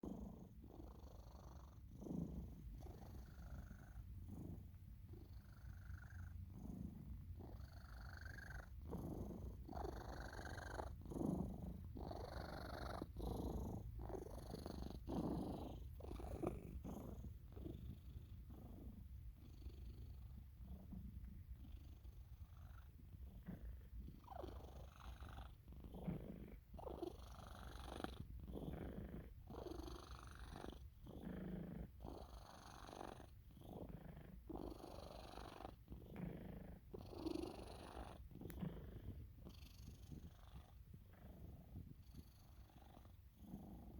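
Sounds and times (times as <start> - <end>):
cat purring: 0.0 - 43.9
cat snoring breaths: 0.0 - 43.9.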